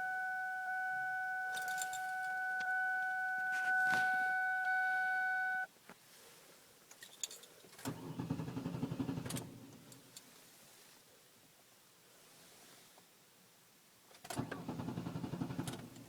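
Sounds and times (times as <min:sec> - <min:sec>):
car warning chime: 0:00.0 - 0:05.7
keys clicking: 0:01.5 - 0:05.5.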